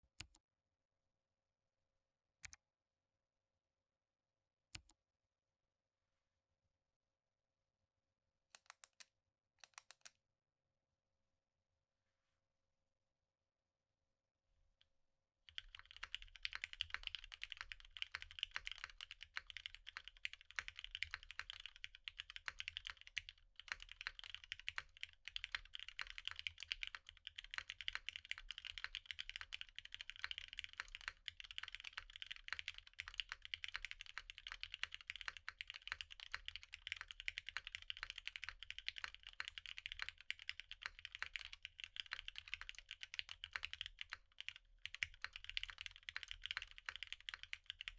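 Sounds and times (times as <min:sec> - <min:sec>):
fast typing on mechanical keyboard: 0:15.5 - 0:47.9.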